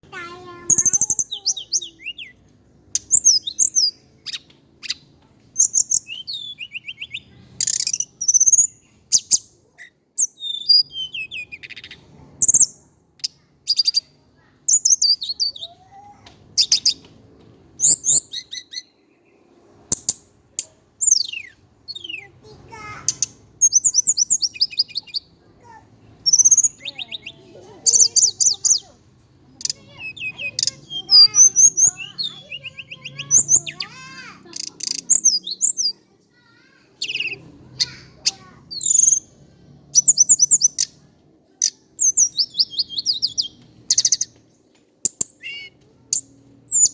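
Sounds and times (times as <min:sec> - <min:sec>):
bird twittering and trilling: 0:00.1 - 0:17.1, 0:17.8 - 0:46.9.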